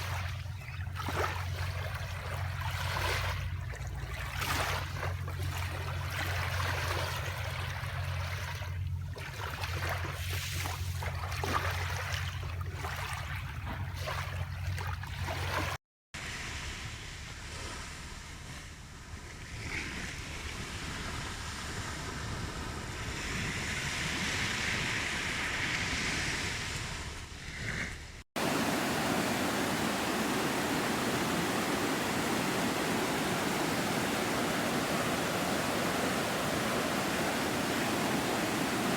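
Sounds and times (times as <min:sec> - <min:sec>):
sea waves and surf: 0:00.0 - 0:38.9
steady low hum: 0:28.4 - 0:38.9.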